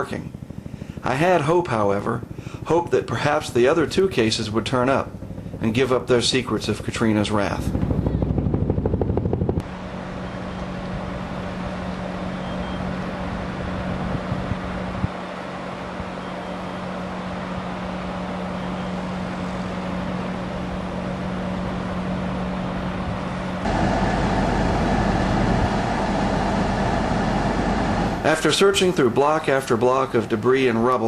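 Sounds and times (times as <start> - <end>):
vehicle running hum: 6.9 - 30.6
loud rough noise: 23.6 - 30.3.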